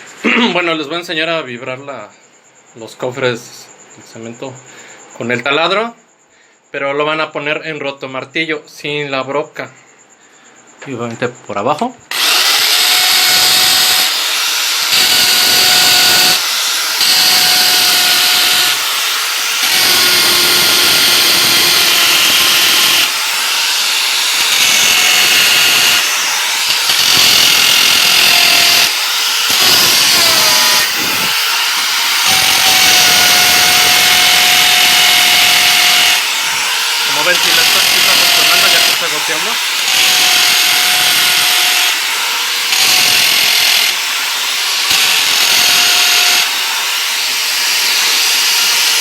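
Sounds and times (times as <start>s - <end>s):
hammer drill running: 12.1s - 49.0s.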